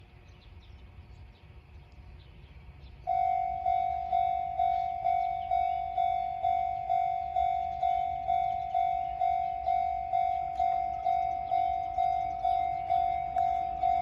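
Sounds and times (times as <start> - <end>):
low background rumble: 0.0 - 14.0
level-crossing warning bell: 3.0 - 14.0.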